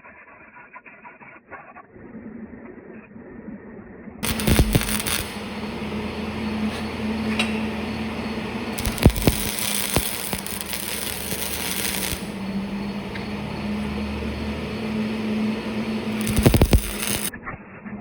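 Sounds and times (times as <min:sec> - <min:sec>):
steady hum: 0:04.2 - 0:17.3.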